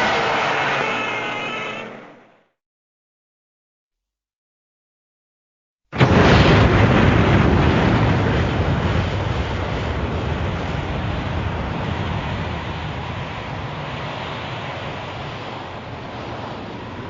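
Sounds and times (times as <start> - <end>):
loud dense rushing blast: 6.0 - 17.0.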